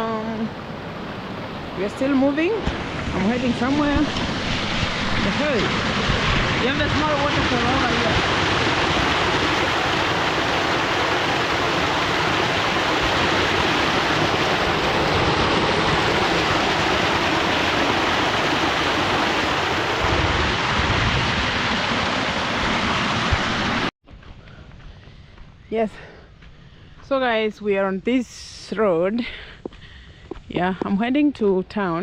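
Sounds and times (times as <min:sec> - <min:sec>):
waterfall rushing: 0:00.6 - 0:23.9.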